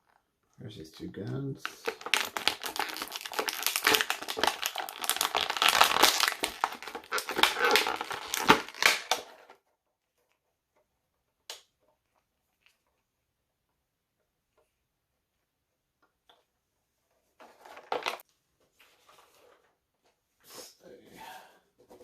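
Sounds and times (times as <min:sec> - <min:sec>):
packaging crinkling and crackling: 0:01.6 - 0:09.4, 0:17.7 - 0:18.2.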